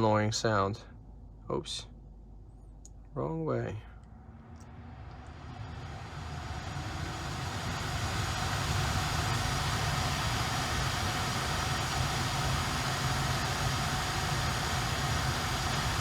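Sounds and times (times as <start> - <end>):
low hum: 0.0 - 16.0
climate control blower rushing air: 4.1 - 16.0.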